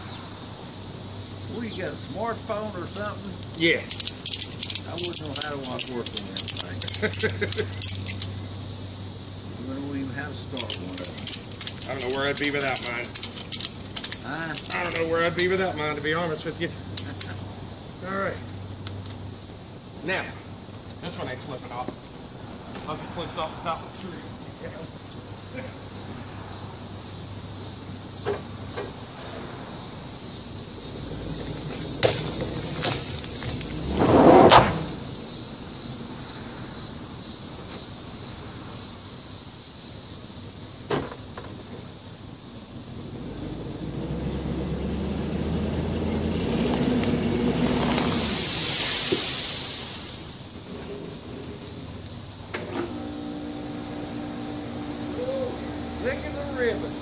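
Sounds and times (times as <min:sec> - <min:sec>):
engine pulling under load: 0:30.5 - 0:35.3, 0:42.7 - 0:57.0
short loud burst: 0:33.7 - 0:35.2.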